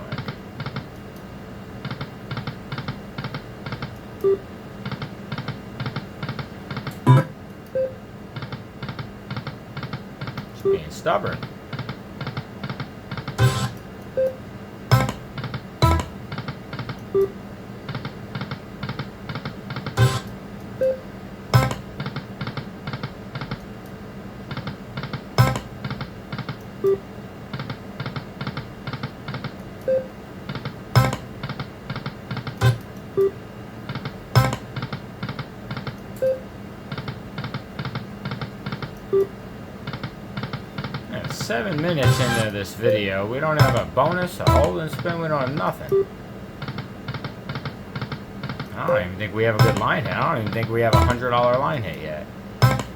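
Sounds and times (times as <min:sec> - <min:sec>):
slot machine reels ticking: 0:13.3 - 0:13.8, 0:14.9 - 0:16.2, 0:19.9 - 0:20.3, 0:21.6 - 0:21.9, 0:25.4 - 0:25.8, 0:31.0 - 0:31.3, 0:32.5 - 0:32.8, 0:34.4 - 0:34.7, 0:41.3 - 0:45.8, 0:48.8 - 0:51.9, 0:52.6 - 0:52.9.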